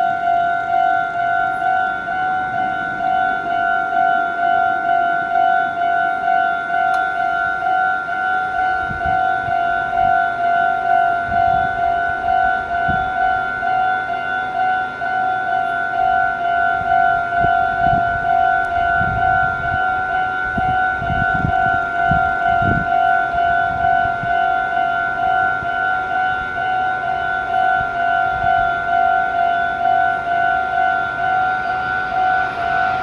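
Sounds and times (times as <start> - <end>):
level crossing alarm ringing: 0.0 - 33.0.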